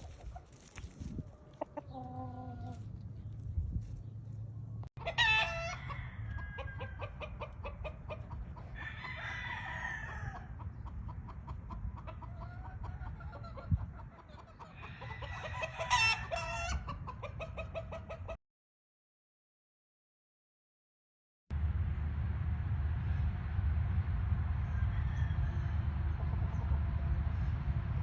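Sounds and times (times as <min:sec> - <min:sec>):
chickens clucking: 0:00.0 - 0:03.4, 0:04.0 - 0:18.4
roosters crowing: 0:01.1 - 0:03.0, 0:05.0 - 0:10.8, 0:14.3 - 0:17.8, 0:24.6 - 0:26.6.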